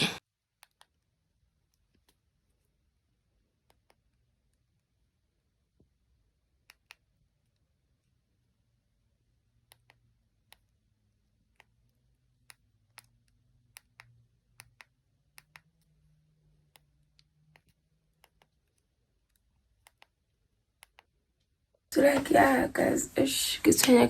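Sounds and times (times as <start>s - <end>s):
faint small clicks: 0.6s - 1.0s.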